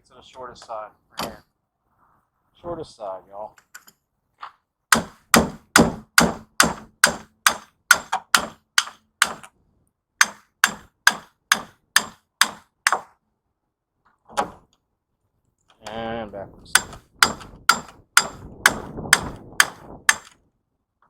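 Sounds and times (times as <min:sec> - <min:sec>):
hammer striking metal tool: 0:04.9 - 0:09.5, 0:10.2 - 0:13.1, 0:16.7 - 0:20.3.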